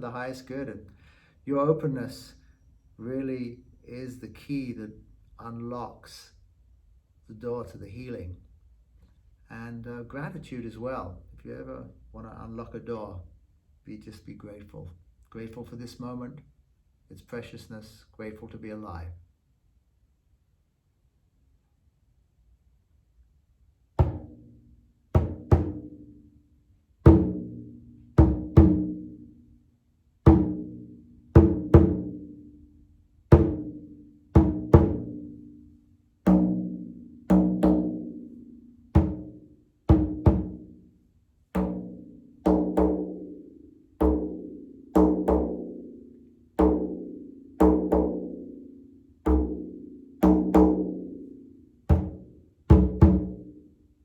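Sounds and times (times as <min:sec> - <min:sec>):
frame drum beat: 0:24.0 - 0:24.5, 0:25.2 - 0:26.0, 0:27.0 - 0:29.3, 0:30.3 - 0:32.4, 0:33.3 - 0:35.5, 0:36.3 - 0:40.9, 0:41.6 - 0:53.5.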